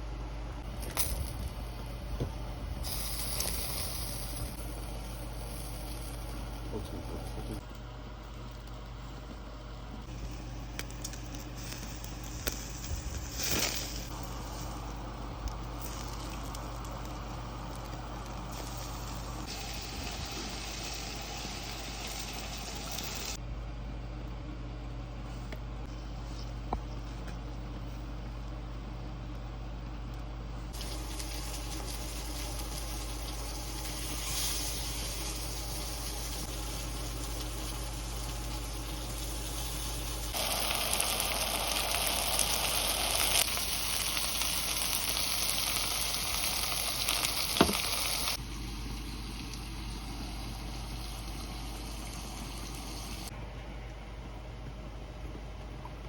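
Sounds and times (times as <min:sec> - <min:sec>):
food sizzling on a grill: 0:02.8 - 0:07.6, 0:10.2 - 0:14.9, 0:15.6 - 0:23.4, 0:30.8 - 0:53.3.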